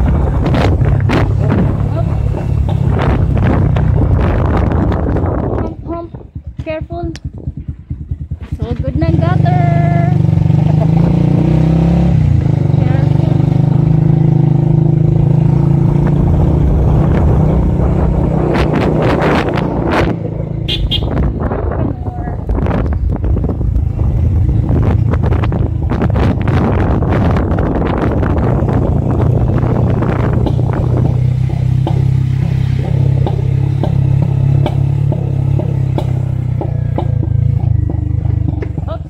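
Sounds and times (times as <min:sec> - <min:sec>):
wind buffeting microphone: 0:00.0 - 0:10.4, 0:11.2 - 0:39.0
vehicle engine running: 0:00.0 - 0:39.0
sharp knocks and rattles: 0:00.4 - 0:05.2, 0:29.9 - 0:39.0.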